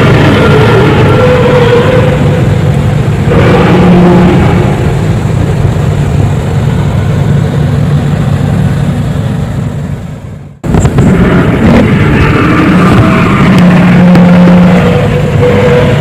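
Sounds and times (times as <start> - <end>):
low droning hum: 0.0 - 16.0.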